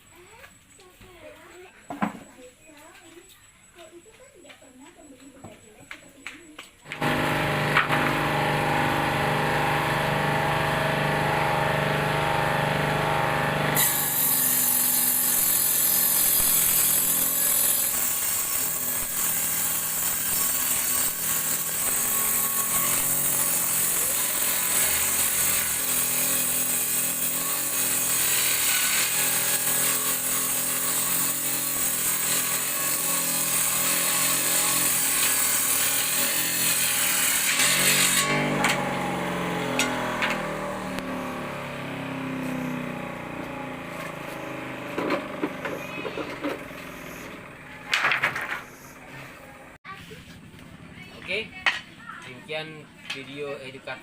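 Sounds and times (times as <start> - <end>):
table saw motor humming: 6.8 - 49.2
saw blade cutting rasping: 6.9 - 49.3.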